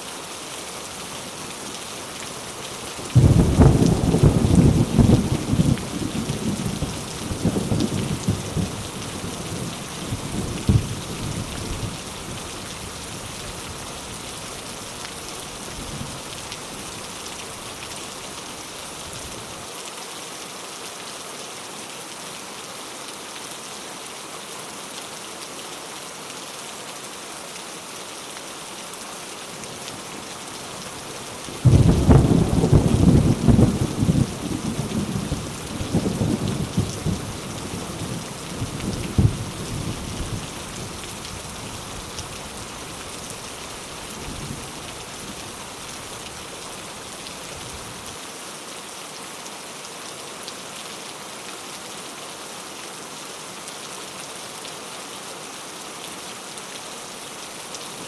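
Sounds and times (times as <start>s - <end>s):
steady rain falling: 0.0s - 58.0s
thunder rolling: 31.6s - 37.4s.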